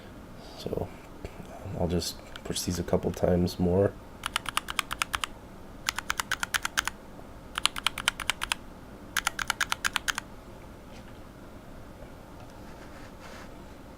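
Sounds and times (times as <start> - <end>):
mechanical keyboard switches clacking: 4.2 - 5.3, 5.9 - 6.9, 7.6 - 8.6, 9.2 - 10.2.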